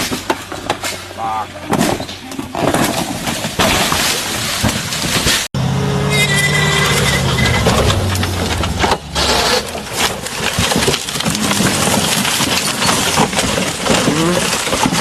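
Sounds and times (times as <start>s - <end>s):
knocks crunches and scraping: 0.0s - 5.5s, 6.3s - 15.0s
off-road vehicle over rough ground: 0.0s - 15.0s.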